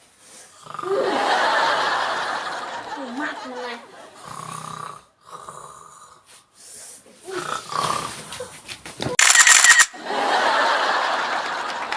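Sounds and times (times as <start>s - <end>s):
man snoring loudly: 0.5s - 1.2s, 4.1s - 6.3s, 7.3s - 8.3s.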